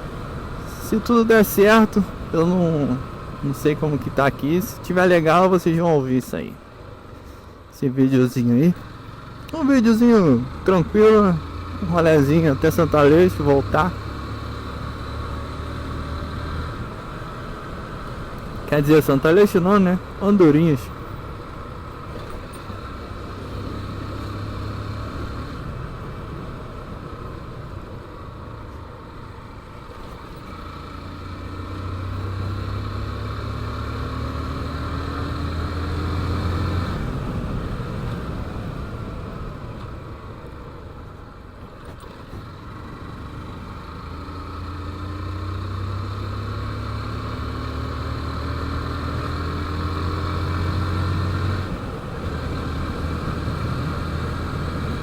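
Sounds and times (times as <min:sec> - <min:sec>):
motorcycle engine accelerating: 0:08.8 - 0:18.6, 0:21.6 - 0:27.5, 0:29.8 - 0:40.0, 0:41.8 - 0:55.0.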